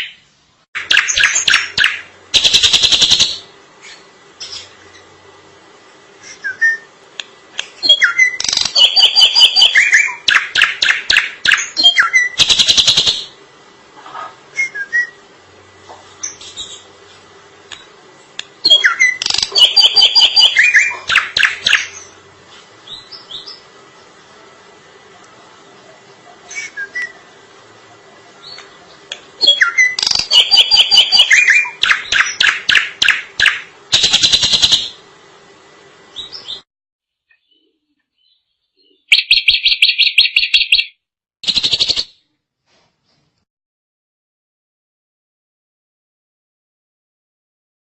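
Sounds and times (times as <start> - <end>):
bird chattering song: 0.0 - 4.8, 7.7 - 13.4, 18.6 - 22.2, 26.3 - 27.2, 28.4 - 35.0, 37.3 - 42.2
faint steady hum: 0.0 - 36.6.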